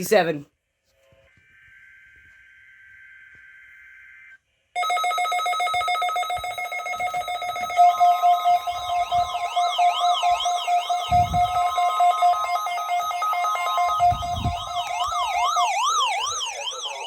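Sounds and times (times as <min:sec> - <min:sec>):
warbling alarm tone: 0:01.6 - 0:17.0
rapidly pulsing alarm beep: 0:04.8 - 0:17.0.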